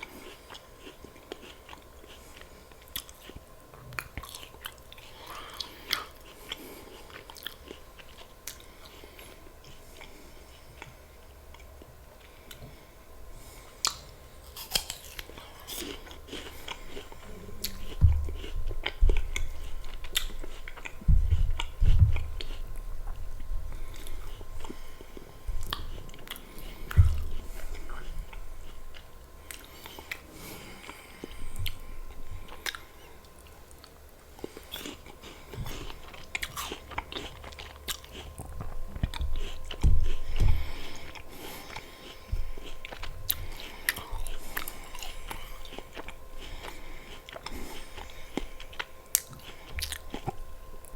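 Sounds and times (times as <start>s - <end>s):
wet chewing: 0.0s - 50.9s
heavy bites thumping: 17.1s - 29.1s.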